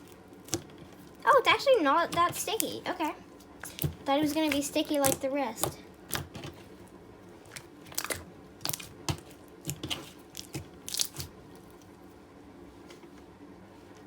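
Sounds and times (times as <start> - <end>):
hands squishing slime: 0.0 - 6.8, 7.4 - 11.8
crackling clicks and pops of slime: 3.6 - 6.5, 7.5 - 11.3.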